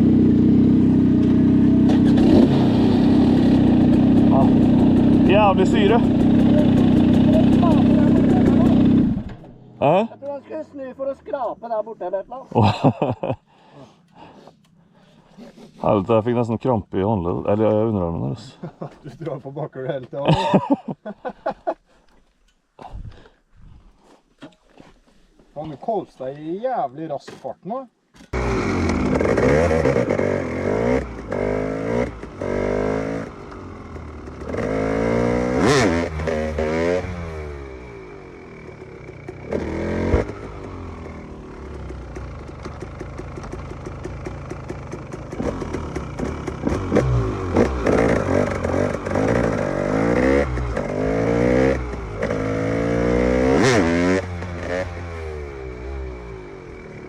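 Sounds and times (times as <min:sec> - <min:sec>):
two-stroke engine revving: 0:00.0 - 0:09.5, 0:28.4 - 0:57.0
engine crackle: 0:28.4 - 0:36.3, 0:37.0 - 0:52.7.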